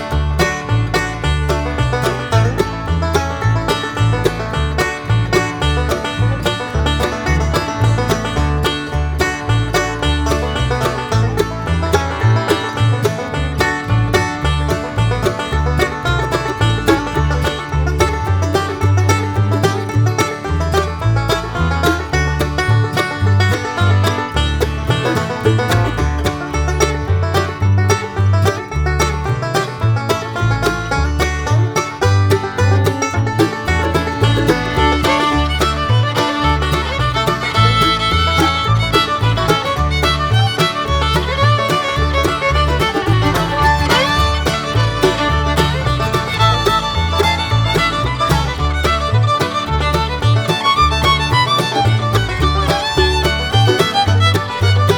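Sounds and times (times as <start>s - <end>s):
bluegrass music with banjo and fiddle: 0.0s - 54.9s.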